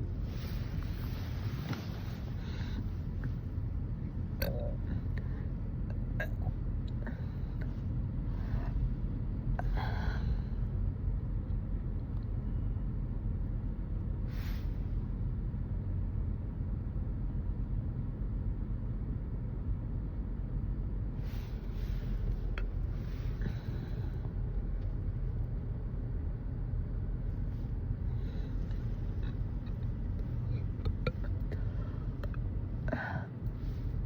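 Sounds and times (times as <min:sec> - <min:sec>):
low rumble: 0:00.0 - 0:34.0
person gasping: 0:02.4 - 0:03.0.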